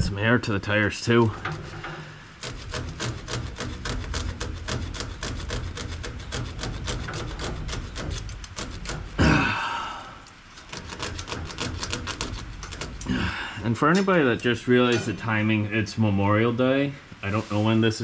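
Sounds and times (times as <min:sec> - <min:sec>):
knife sawing and scraping twine: 0:01.1 - 0:09.5, 0:10.3 - 0:13.1
person grunting: 0:09.2 - 0:10.1, 0:13.0 - 0:13.6.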